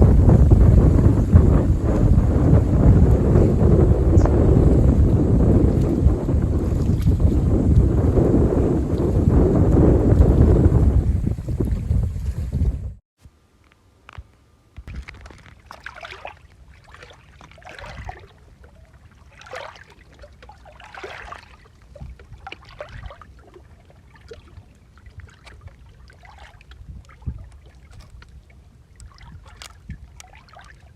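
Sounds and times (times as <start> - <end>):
wind rumbling on microphone: 0.0 - 13.0, 14.8 - 15.7, 16.9 - 19.2, 20.8 - 30.9
small waves lapping on shore: 14.9 - 30.9.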